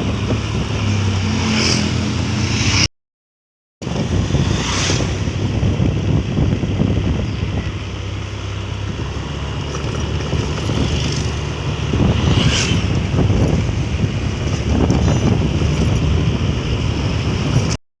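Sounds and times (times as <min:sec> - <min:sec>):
wind buffeting microphone: 0:00.0 - 0:02.5, 0:03.8 - 0:17.8
vehicle engine and road noise: 0:00.0 - 0:02.9, 0:03.8 - 0:17.8.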